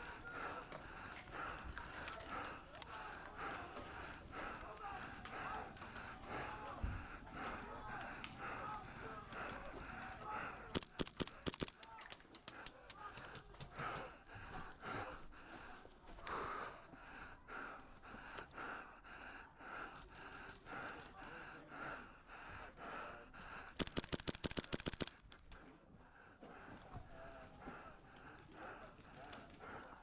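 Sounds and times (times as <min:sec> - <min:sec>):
heavy rhythmic breathing: 0:00.0 - 0:30.0
airsoft gunfire burst: 0:10.7 - 0:11.8, 0:23.8 - 0:25.4.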